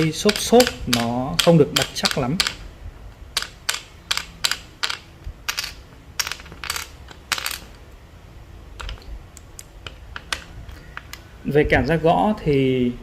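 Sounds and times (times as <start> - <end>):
plastic keycaps clacking: 0.0 - 2.6.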